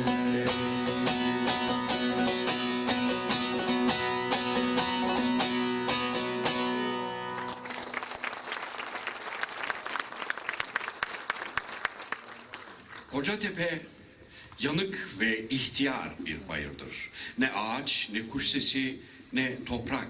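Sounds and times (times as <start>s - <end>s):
plucked string instrument strumming: 0.0s - 7.6s
audience applause: 7.2s - 13.1s.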